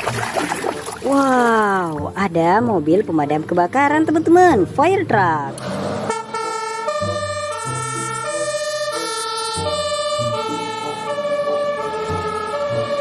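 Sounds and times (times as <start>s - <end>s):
electronic siren tones: 5.6s - 13.0s.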